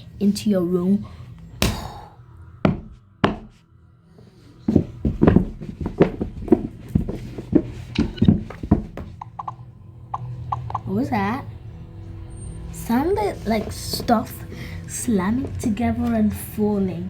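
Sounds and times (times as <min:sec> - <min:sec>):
heavy knocks and thuds: 0:02.6 - 0:03.6, 0:04.7 - 0:09.2.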